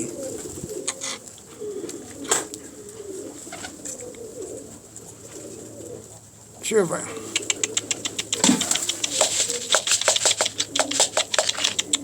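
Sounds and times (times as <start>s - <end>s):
pigeons cooing: 0.0s - 12.0s
sharp click: 7.2s - 12.0s.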